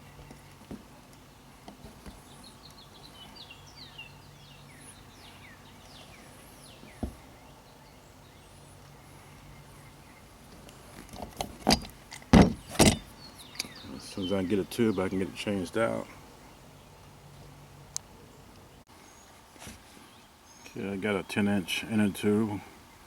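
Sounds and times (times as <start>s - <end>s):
faint birdsong chirps: 0.0s - 23.0s
knocks: 11.7s - 13.0s.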